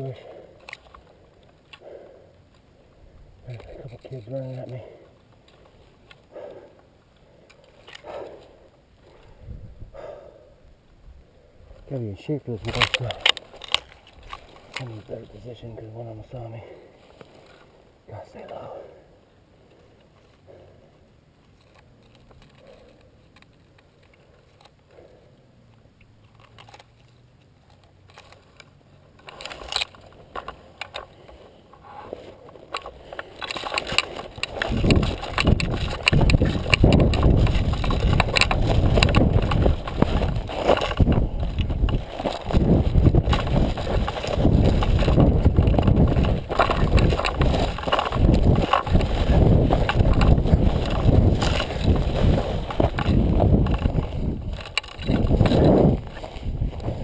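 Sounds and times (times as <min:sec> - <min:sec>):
brush and dry leaves crunching: 0:00.0 - 0:09.6, 0:11.7 - 0:24.9, 0:25.9 - 0:57.0
microphone movement rumble: 0:08.0 - 0:16.4, 0:31.8 - 0:57.0.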